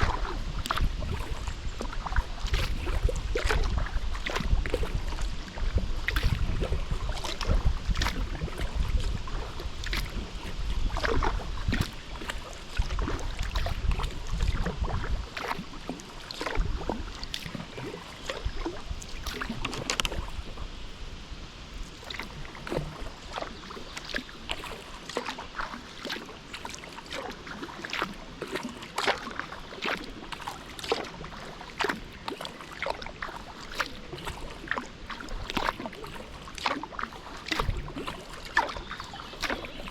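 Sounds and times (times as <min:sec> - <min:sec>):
wind rumbling on microphone: 0:00.0 - 0:24.8, 0:37.5 - 0:39.9
paddle splashing water: 0:00.0 - 0:39.9.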